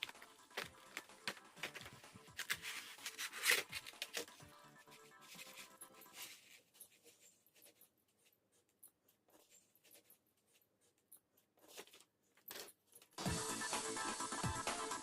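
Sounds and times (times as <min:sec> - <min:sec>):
music: 0:00.0 - 0:06.5, 0:13.2 - 0:15.0
brush pen scratching on paper: 0:01.7 - 0:12.0.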